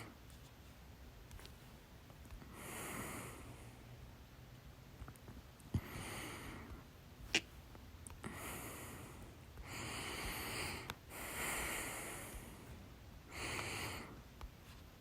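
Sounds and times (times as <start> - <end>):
heavy noisy breathing: 2.4 - 4.0, 5.7 - 6.9, 8.2 - 14.3.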